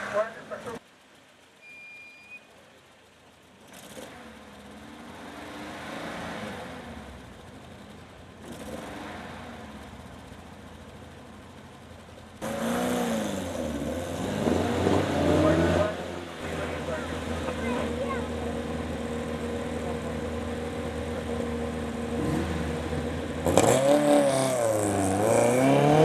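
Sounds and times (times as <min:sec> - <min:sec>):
race car engine revving: 0:03.6 - 0:10.7, 0:12.4 - 0:26.0.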